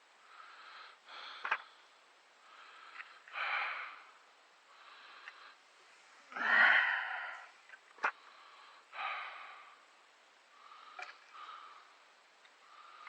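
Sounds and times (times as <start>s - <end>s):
man breathing hard: 2.4s - 7.6s, 8.2s - 10.0s.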